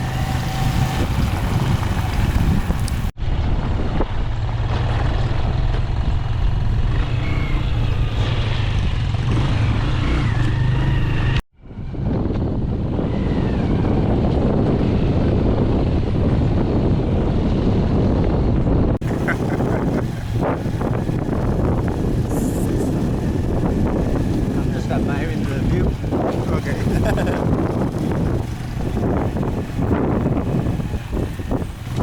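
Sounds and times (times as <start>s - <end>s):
motorbike engine running: 0.0s - 11.0s, 19.0s - 32.0s
wind noise on microphone: 0.0s - 32.0s.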